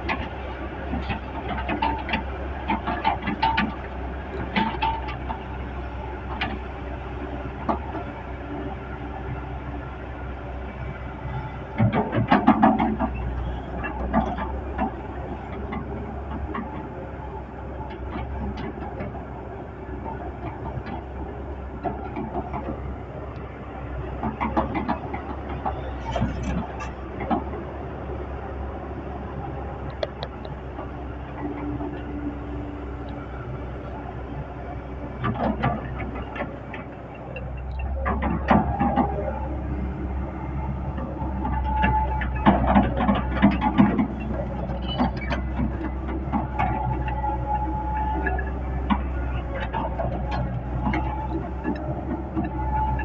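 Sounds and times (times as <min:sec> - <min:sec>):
diesel engine running: 0:00.0 - 0:53.0
metallic clanks and knocks: 0:40.9 - 0:53.0
short squeals: 0:44.2 - 0:45.6.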